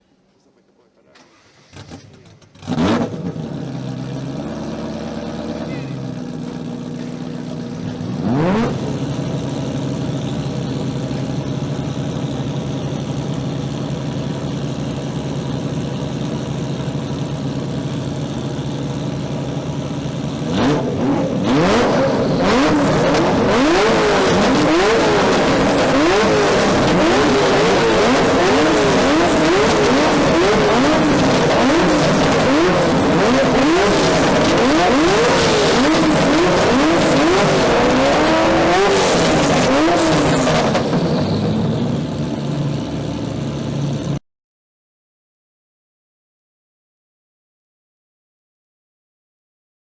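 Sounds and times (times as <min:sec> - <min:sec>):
car engines idling: 0:00.0 - 0:44.2
engines revving: 0:01.2 - 0:13.2, 0:17.6 - 0:44.1.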